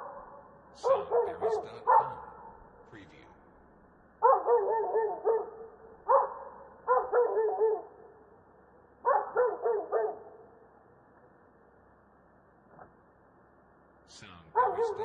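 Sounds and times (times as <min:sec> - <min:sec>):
dog barking: 0:00.0 - 0:02.7, 0:04.2 - 0:08.1, 0:09.0 - 0:10.6, 0:14.5 - 0:15.0.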